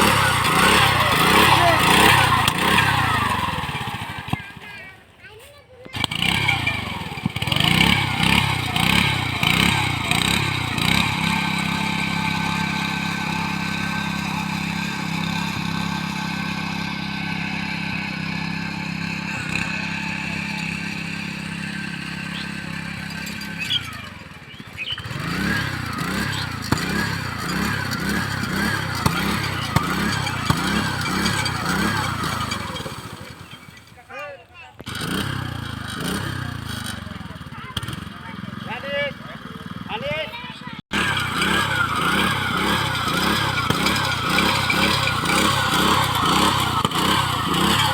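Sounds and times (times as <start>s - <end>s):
harvester engine running under load: 0.0s - 5.0s, 5.9s - 34.0s, 40.9s - 47.9s.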